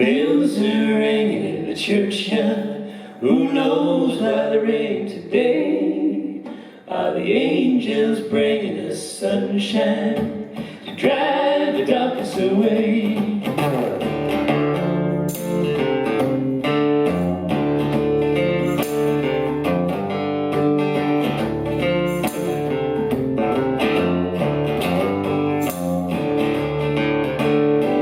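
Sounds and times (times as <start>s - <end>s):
guitar strummed and picked: 10.2s - 28.0s.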